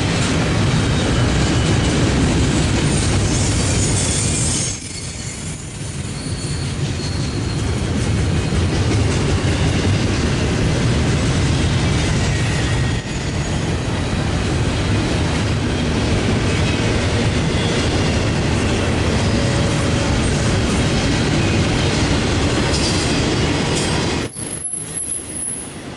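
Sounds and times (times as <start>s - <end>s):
train wheels rumbling on rails: 0.0s - 25.9s
high wheel squeal: 3.3s - 7.8s, 12.2s - 14.3s, 24.2s - 25.9s.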